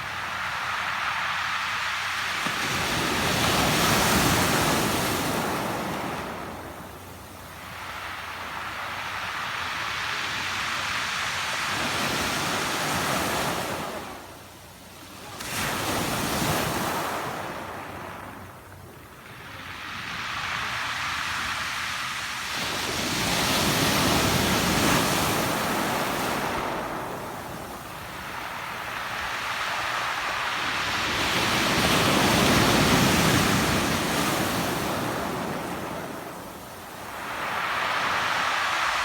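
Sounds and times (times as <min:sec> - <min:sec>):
waves breaking on pebble beach: 0:00.0 - 0:06.8, 0:19.4 - 0:39.0.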